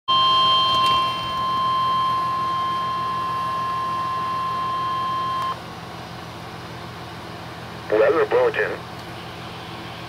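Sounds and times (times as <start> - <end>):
high-pitched alarm tone: 0.1 - 5.6.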